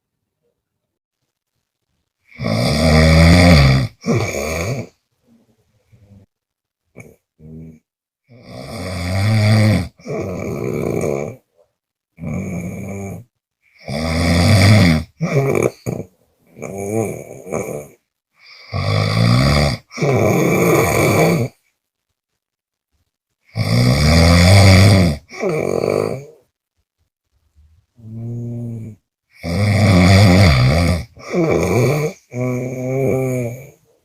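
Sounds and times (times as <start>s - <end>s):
person snoring: 2.3s - 5.0s, 7.0s - 11.4s, 12.2s - 21.6s, 23.5s - 26.5s, 28.0s - 33.9s.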